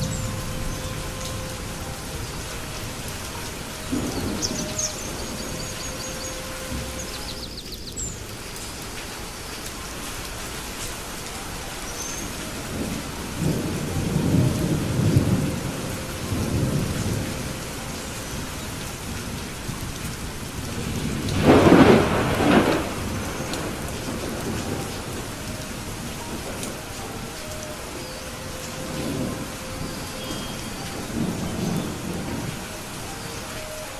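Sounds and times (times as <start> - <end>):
thunder rumbling: 0.0 - 8.5, 9.8 - 33.9
steady rain: 0.0 - 33.9
sharp thunderclap: 20.6 - 25.2.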